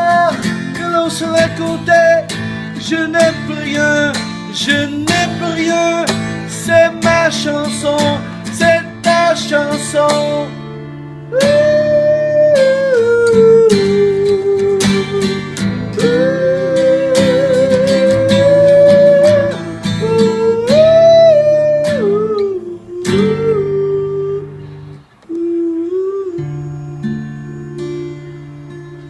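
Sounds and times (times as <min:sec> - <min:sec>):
acoustic guitar: 0:00.0 - 0:29.0
wordless vocal melody: 0:00.0 - 0:29.0.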